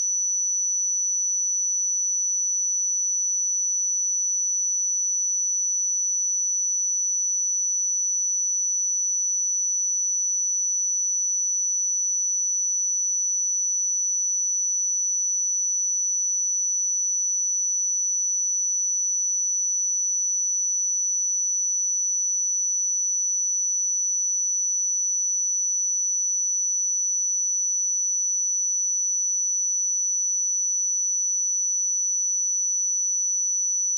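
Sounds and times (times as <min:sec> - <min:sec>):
high-pitched sine test tone: 0:15.5 - 0:33.9.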